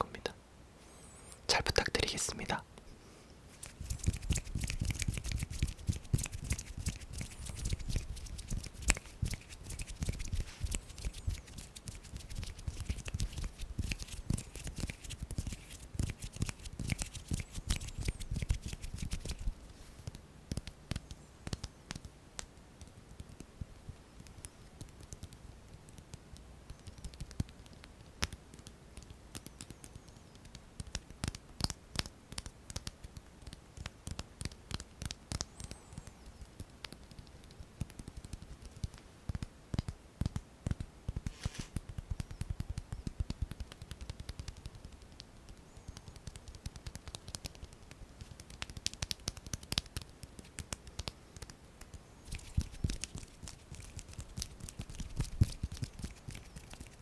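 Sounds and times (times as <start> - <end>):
skin rustling: 3.5 - 20.0, 41.2 - 41.8, 52.2 - 57.0
fingers crackling and tapping: 3.5 - 57.0.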